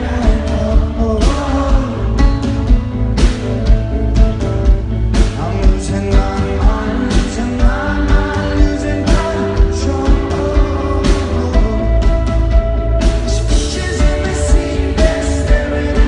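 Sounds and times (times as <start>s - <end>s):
lead vocal singing: 0.0s - 3.0s, 5.2s - 16.0s
rock band playing: 0.0s - 16.0s
steady drum beat: 0.0s - 16.0s.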